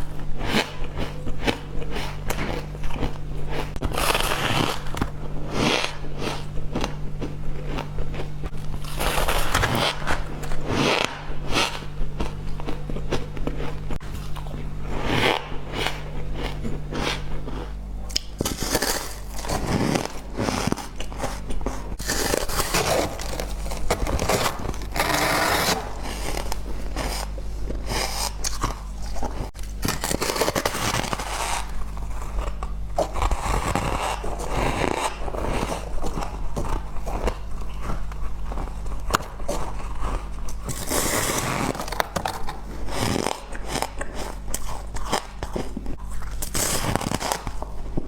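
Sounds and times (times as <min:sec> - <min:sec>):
chewing ice crunches: 0:00.0 - 0:48.0.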